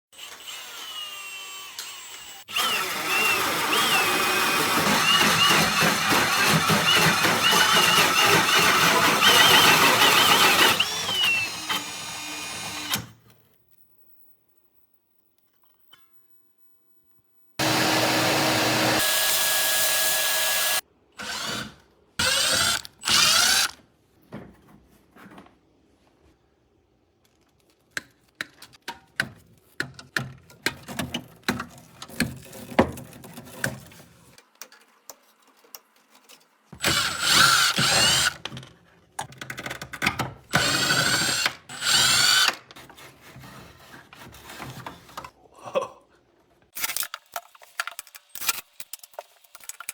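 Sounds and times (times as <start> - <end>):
power drill running: 0.2 - 13.1, 17.6 - 23.8, 36.8 - 38.4, 40.5 - 42.6
tools clicking and knocking: 27.9 - 33.8, 34.4 - 41.6.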